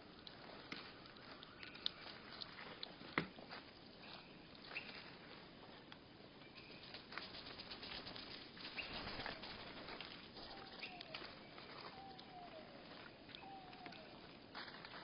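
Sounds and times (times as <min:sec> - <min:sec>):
birds feeding clicks and taps: 0:00.2 - 0:03.3, 0:06.4 - 0:12.6, 0:13.2 - 0:14.2
wing flutter: 0:06.7 - 0:11.2
drawn-out low falling calls: 0:06.8 - 0:14.4.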